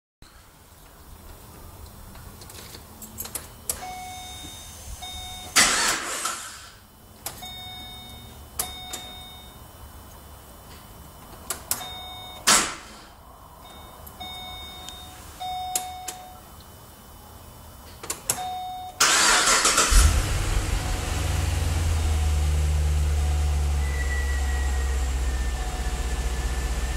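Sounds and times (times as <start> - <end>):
car warning chime beeping: 3.8 - 5.6, 7.4 - 9.7, 11.8 - 12.5, 13.6 - 16.5, 18.3 - 26.9
short loud bursts of noise: 5.6 - 6.8.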